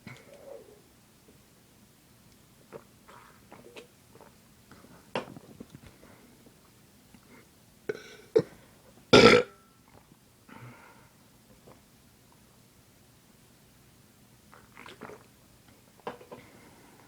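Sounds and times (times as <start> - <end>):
person burping: 9.2 - 9.6.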